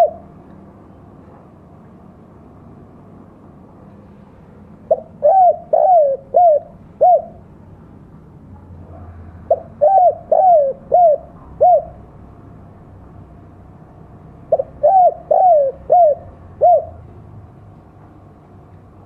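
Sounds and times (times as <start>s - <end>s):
dove cooing: 0.0s - 0.3s, 4.9s - 7.5s, 9.5s - 12.1s, 14.5s - 17.1s.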